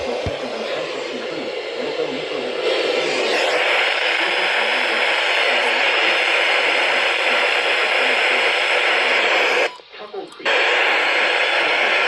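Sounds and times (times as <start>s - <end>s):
faint automated voice: 0.0s - 12.0s
radio static hiss: 0.0s - 12.0s.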